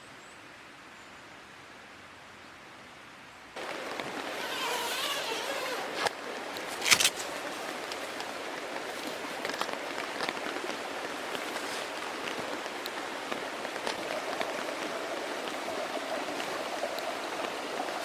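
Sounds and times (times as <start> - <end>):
faint hiss: 0.0 - 18.0
rain pattering: 3.6 - 5.4, 6.0 - 18.0.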